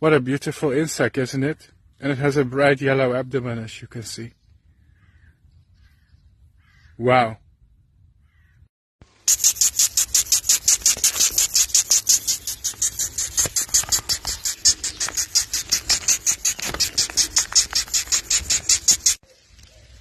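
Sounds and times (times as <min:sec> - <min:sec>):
moth squeaking shrilly: 0:09.3 - 0:19.2.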